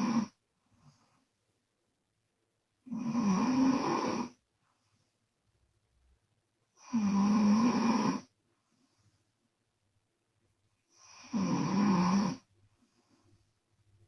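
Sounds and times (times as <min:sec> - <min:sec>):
woman snoring with lips flapping: 0:00.0 - 0:00.4, 0:02.8 - 0:04.4, 0:06.8 - 0:08.3, 0:10.9 - 0:12.5.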